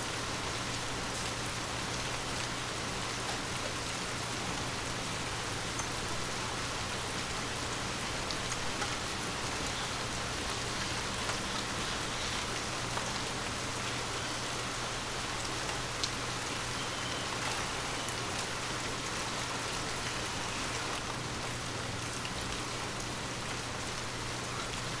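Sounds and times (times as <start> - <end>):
heavy rain: 0.0 - 25.0
raindrop ticks: 15.4 - 16.2.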